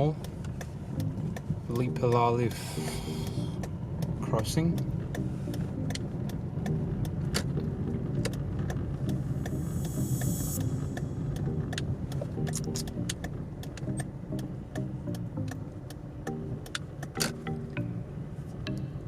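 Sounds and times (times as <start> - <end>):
car engine and road rumble: 0.0 - 19.0
light ticks and clicks: 0.0 - 19.0
short hiss: 9.6 - 11.2.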